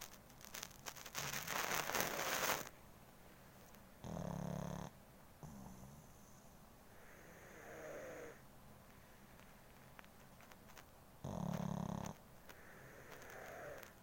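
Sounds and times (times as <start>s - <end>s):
dog snoring: 4.0s - 8.4s, 11.2s - 14.0s.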